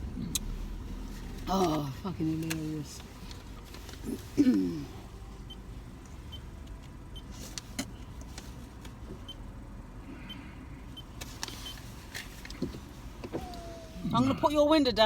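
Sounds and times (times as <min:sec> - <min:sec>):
low rumble inside car cabin: 0:00.0 - 0:15.0.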